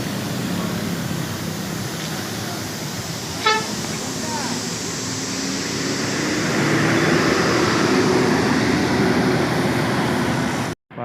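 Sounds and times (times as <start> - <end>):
bus rushing noise: 0.0 - 10.8
low engine hum: 0.0 - 10.8.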